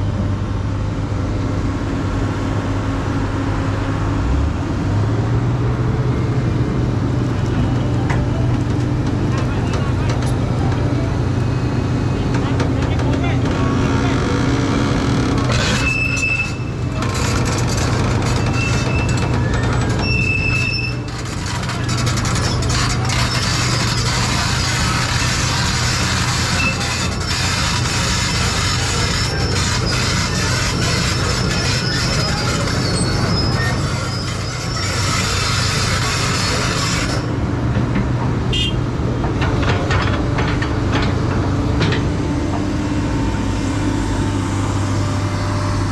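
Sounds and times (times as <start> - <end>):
diesel engines running under load: 0.0 - 45.9
short high-pitched squeals: 15.5 - 37.3
brief squeal: 15.6 - 16.8, 18.4 - 21.1, 31.2 - 35.6
metallic knocks and clanks: 39.2 - 42.7.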